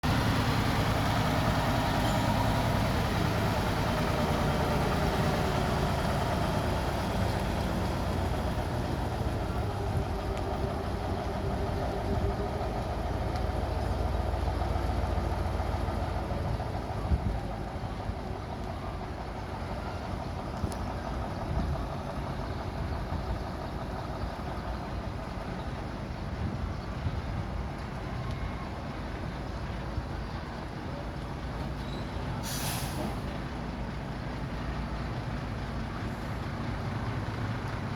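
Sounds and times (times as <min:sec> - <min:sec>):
heavy machine engine running: 0:00.0 - 0:25.8.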